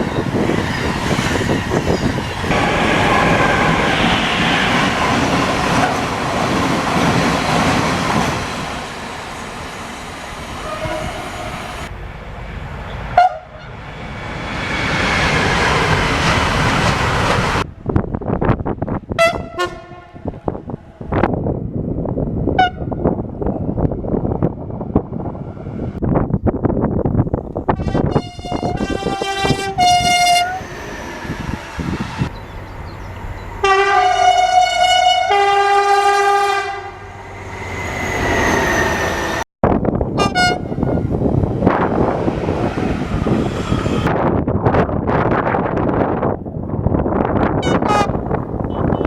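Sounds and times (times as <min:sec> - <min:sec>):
train rumble and rail clatter: 0:00.0 - 0:49.0
train horn blast: 0:13.2 - 0:13.8, 0:19.2 - 0:20.3, 0:22.6 - 0:23.0, 0:27.7 - 0:30.6, 0:33.6 - 0:37.1, 0:40.2 - 0:41.0, 0:47.6 - 0:49.0.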